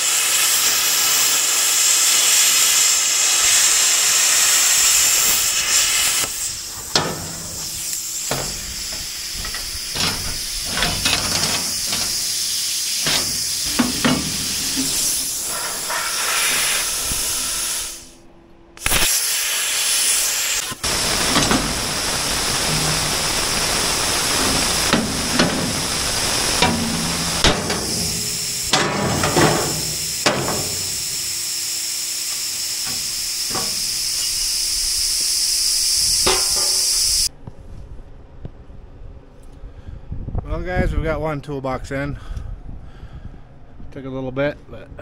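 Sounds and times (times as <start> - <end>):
welding crackling hiss: 0.0 - 18.2, 18.8 - 37.3
sharp knocks: 13.0 - 15.2.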